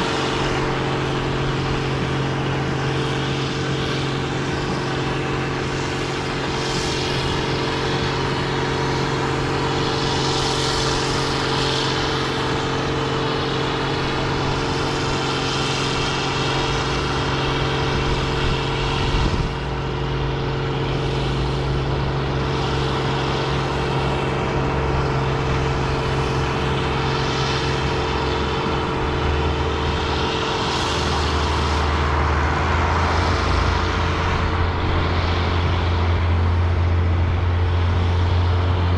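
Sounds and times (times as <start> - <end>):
deep rumble: 0.0 - 38.9
farm machine engine running: 0.0 - 38.9.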